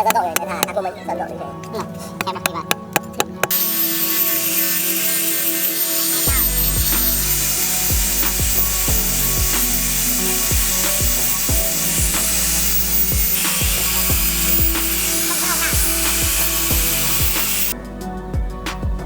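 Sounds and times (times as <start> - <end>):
background music: 0.0 - 19.0
rasping strokes on wood: 3.2 - 17.8.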